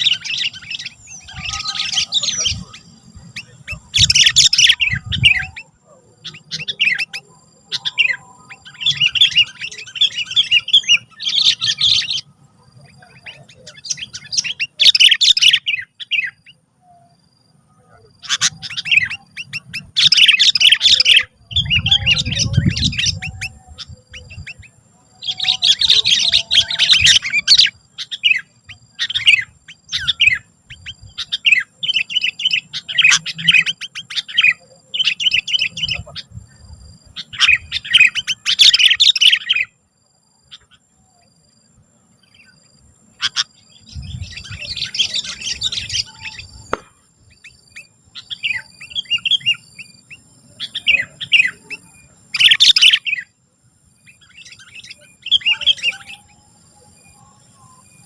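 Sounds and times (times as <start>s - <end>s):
bulbul singing chirpy phrases: 0.0s - 39.7s, 42.3s - 53.3s, 54.1s - 58.0s.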